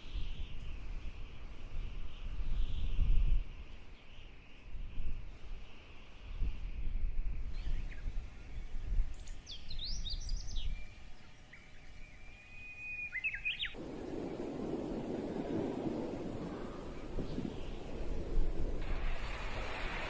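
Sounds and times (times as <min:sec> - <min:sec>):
rush of wind: 0:00.0 - 0:11.2, 0:12.5 - 0:20.0
wind rumble on microphone: 0:00.0 - 0:20.0
bird whistling song: 0:07.6 - 0:19.3.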